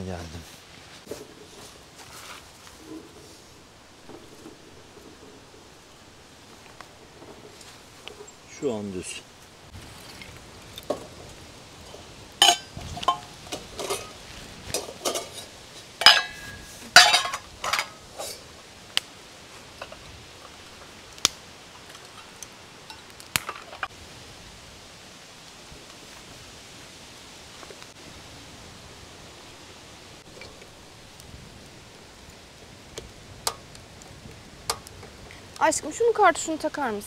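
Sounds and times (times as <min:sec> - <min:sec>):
metal cookware clinking: 0:12.4 - 0:14.2, 0:14.8 - 0:18.4.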